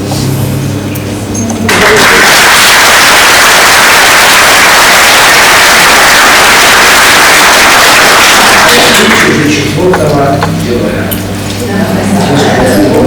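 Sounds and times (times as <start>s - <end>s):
loud rushing static noise: 1.7s - 9.9s
steady tones: 1.7s - 10.6s.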